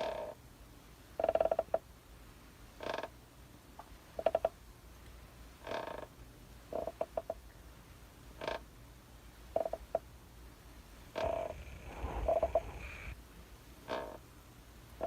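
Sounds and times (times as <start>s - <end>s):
rocking chair creaking: 11.2s - 13.2s.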